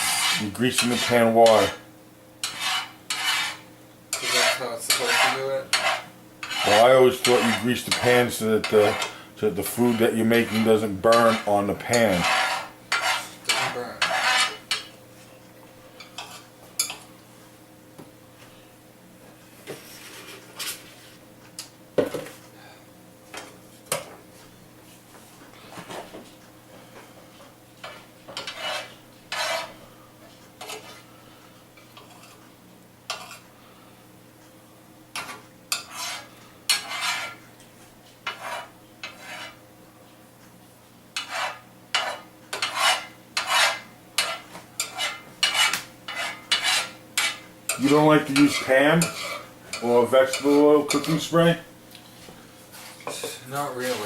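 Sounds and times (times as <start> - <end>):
utensil scraping cookware: 0.0 - 1.8, 2.4 - 14.9, 27.8 - 29.8, 30.6 - 31.1, 33.1 - 33.4, 35.2 - 37.4, 38.2 - 39.6, 41.2 - 51.4.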